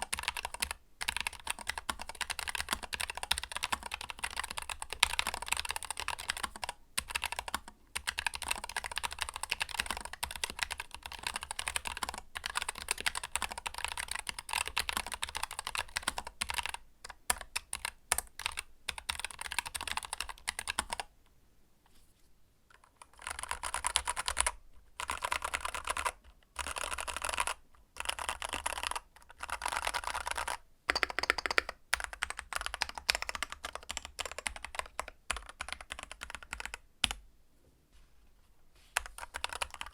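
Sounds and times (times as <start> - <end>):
fast mechanical keyboard typing: 0.0 - 21.1, 22.8 - 37.2, 39.0 - 39.9
deep keyboard key clacking: 30.4 - 37.2.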